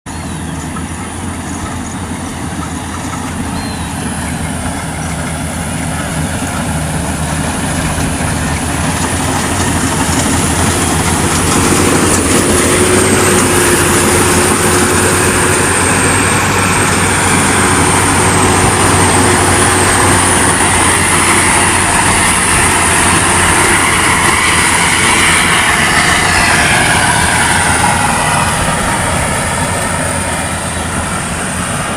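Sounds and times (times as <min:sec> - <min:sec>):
harvesting machine engine: 0:00.1 - 0:31.9
high machine whine: 0:00.1 - 0:31.9.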